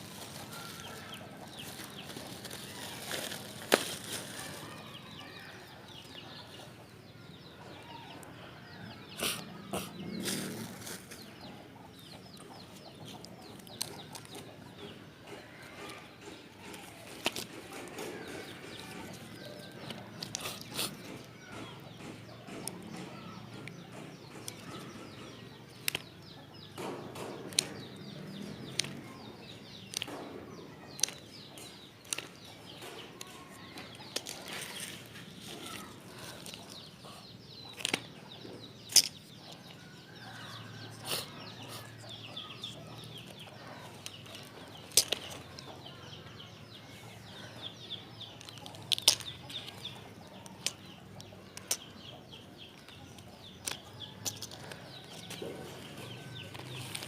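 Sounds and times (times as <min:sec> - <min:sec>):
plastic packaging crinkling: 0:00.0 - 0:04.9
sharp clicks and taps: 0:12.3 - 0:39.8, 0:42.1 - 0:46.5, 0:47.7 - 0:57.0.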